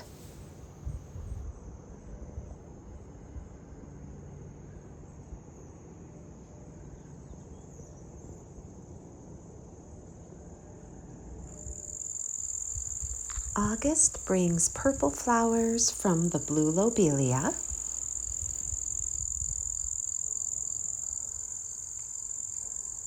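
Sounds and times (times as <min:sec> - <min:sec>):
crickets trilling: 0:06.7 - 0:23.0.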